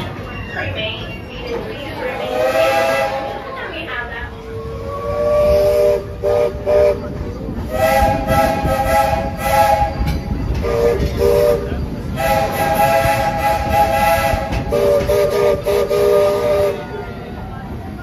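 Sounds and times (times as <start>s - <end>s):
steam engine hiss and rumble: 0.0s - 18.0s
steam locomotive chime whistle: 7.7s - 17.1s.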